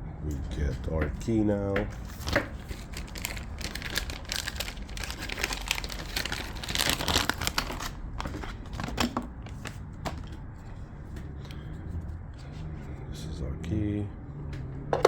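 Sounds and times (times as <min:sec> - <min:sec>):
plastic packaging crinkling: 0:02.0 - 0:10.4.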